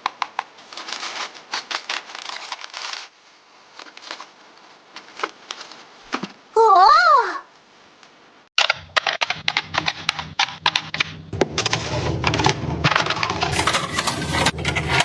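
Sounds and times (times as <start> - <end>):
clattering of small hard items: 8.6 - 15.0.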